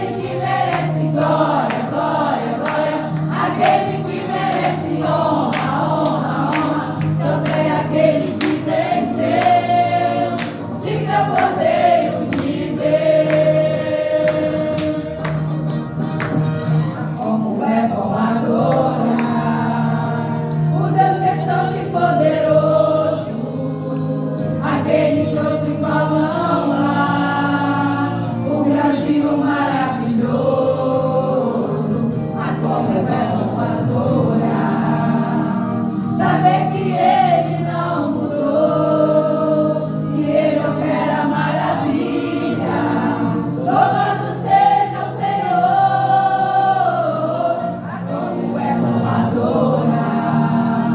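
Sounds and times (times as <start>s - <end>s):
gospel choir singing: 0.0s - 50.9s
low instrumental accompaniment: 0.0s - 50.9s.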